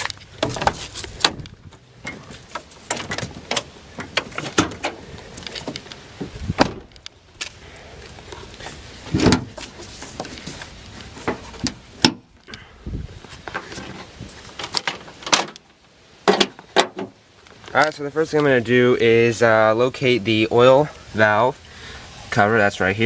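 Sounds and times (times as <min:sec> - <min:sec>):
van hood latch clicks and clunks: 0:00.0 - 0:05.0, 0:05.6 - 0:07.0, 0:09.1 - 0:09.6, 0:14.7 - 0:15.6, 0:16.2 - 0:17.2.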